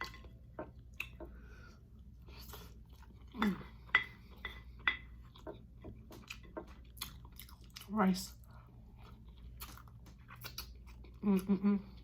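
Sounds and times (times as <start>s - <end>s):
person chewing with wet smacks: 0.0s - 12.0s
person humming mm: 11.2s - 12.0s.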